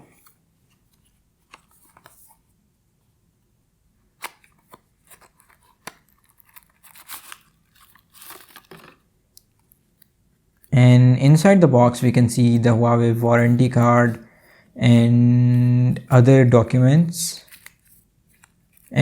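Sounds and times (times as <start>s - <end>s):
card and paper rustling: 0.0s - 2.4s, 4.2s - 10.0s, 11.9s - 14.6s, 15.5s - 19.0s.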